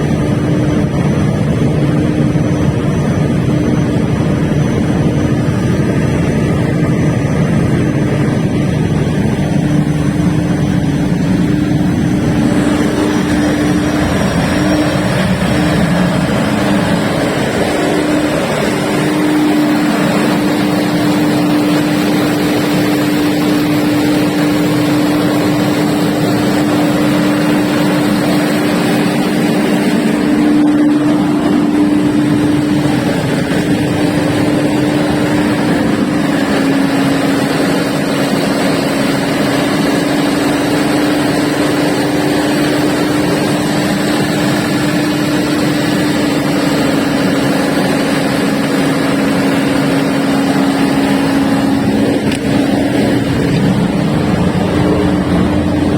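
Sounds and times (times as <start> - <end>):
diesel generator humming: 0.0 - 55.9.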